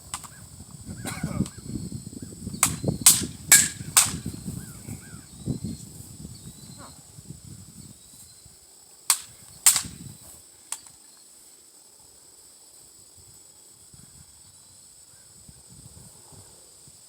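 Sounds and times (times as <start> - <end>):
sharp cracks: 0.0 - 0.4, 2.6 - 4.6, 9.1 - 10.1.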